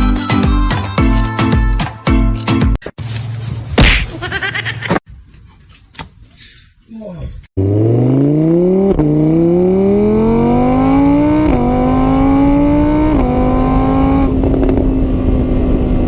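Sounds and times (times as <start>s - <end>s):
vehicle engine accelerating: 7.6s - 16.0s.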